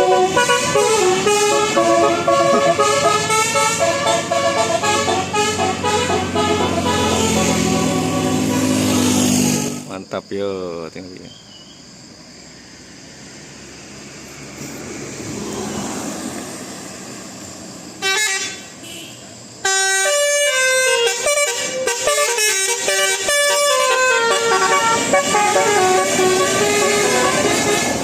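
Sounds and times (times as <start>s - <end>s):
bus engine rumble: 0.0s - 9.9s, 11.8s - 28.0s
musical bus horn melody: 0.0s - 9.9s, 18.0s - 28.0s
short horn blast: 0.0s - 9.9s, 19.7s - 28.0s.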